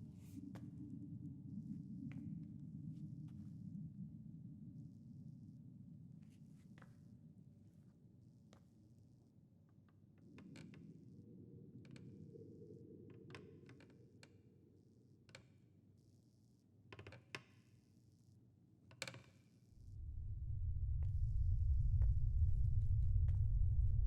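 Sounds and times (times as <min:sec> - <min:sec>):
deep low rumble: 0:19.8 - 0:24.0.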